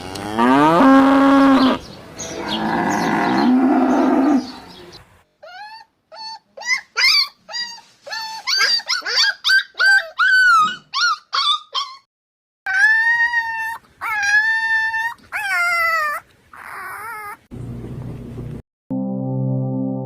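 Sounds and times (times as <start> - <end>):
puppy yelping and whining: 5.4 - 12.1, 12.7 - 17.5.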